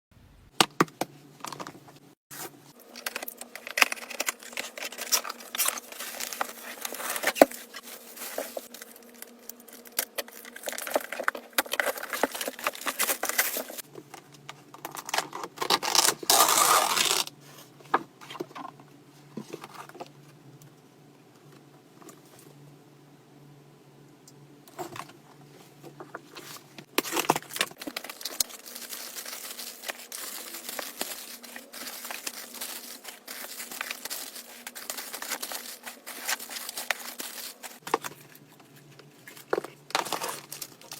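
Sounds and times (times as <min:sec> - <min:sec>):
packaging crinkling and tearing: 0:02.4 - 0:13.8, 0:14.8 - 0:17.3, 0:26.9 - 0:40.9.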